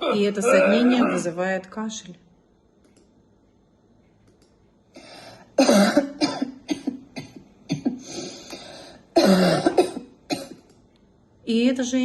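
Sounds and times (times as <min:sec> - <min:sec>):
man coughing: 0:05.6 - 0:08.0, 0:09.2 - 0:10.6.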